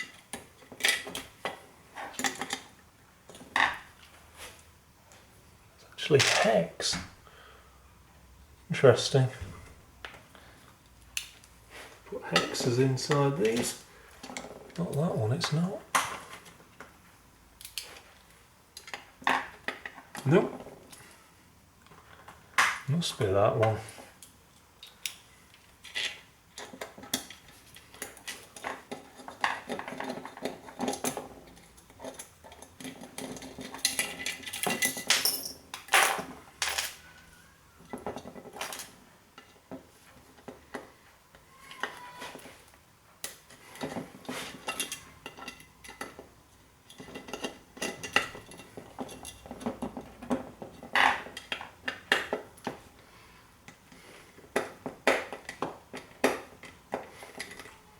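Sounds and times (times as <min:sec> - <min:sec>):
small metal tools clinking: 0:24.7 - 0:39.6, 0:43.2 - 0:52.7, 0:55.3 - 0:57.9.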